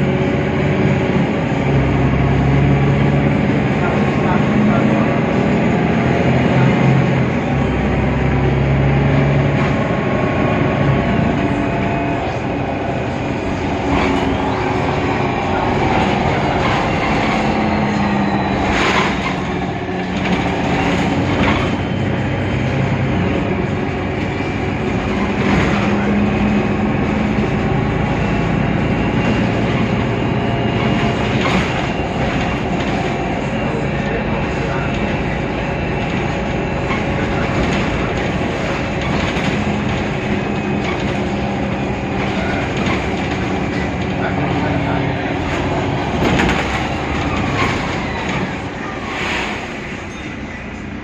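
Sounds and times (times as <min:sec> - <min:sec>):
bus engine drone: 0:00.0 - 0:51.0.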